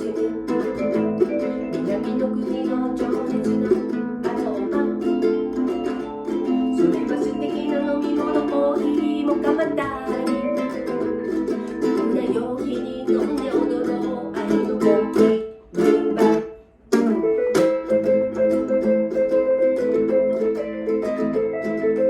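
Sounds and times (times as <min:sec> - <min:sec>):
guitar strumming chords: 0:00.0 - 0:22.0
keyboards playing rumba: 0:00.6 - 0:02.4, 0:16.2 - 0:22.0.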